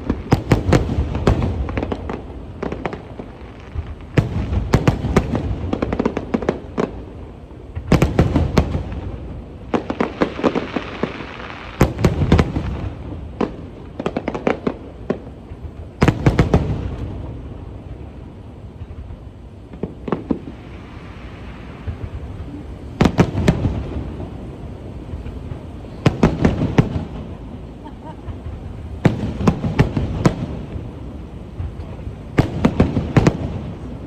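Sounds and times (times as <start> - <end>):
fireworks bangs and crackle: 0.0 - 34.0.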